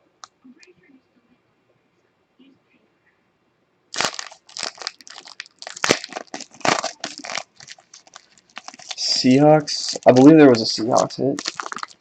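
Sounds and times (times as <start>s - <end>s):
wrappers crinkling: 3.9s - 12.0s.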